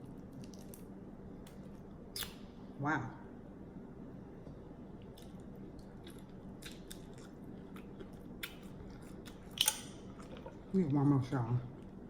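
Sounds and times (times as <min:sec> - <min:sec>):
person chewing food: 0:05.0 - 0:10.8.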